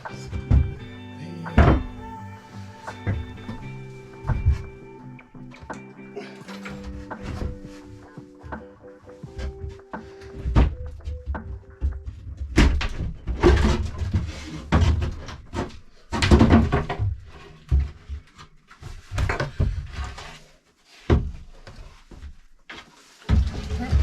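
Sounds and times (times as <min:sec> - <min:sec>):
music: 0:00.0 - 0:14.2
irregular knocks and thumps: 0:02.8 - 0:05.8, 0:06.6 - 0:18.2.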